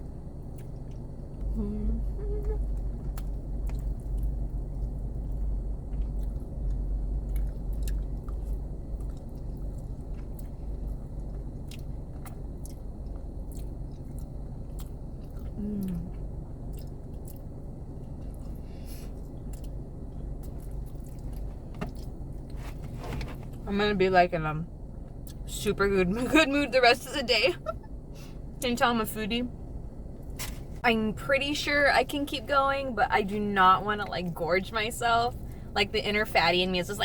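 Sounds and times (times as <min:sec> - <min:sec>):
low hum: 0:00.0 - 0:37.0
person humming mm: 0:01.5 - 0:02.7, 0:15.6 - 0:16.1
person chewing food: 0:02.4 - 0:17.6, 0:18.2 - 0:22.6.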